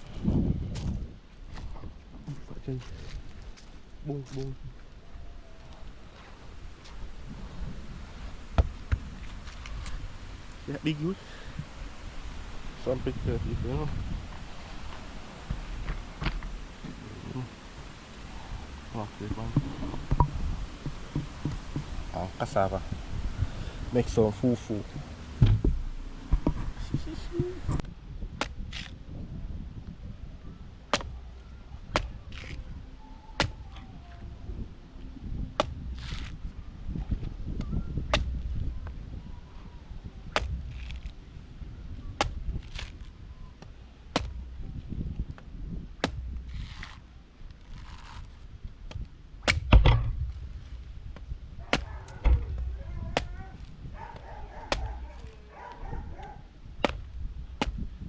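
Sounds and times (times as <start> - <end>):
low wind-like rumble: 0.0 - 58.0.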